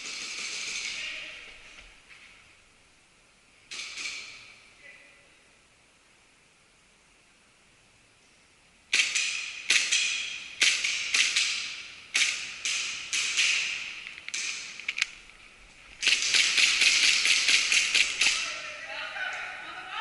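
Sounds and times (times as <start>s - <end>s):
airsoft pistol shots: 8.9s - 14.8s, 16.0s - 18.4s.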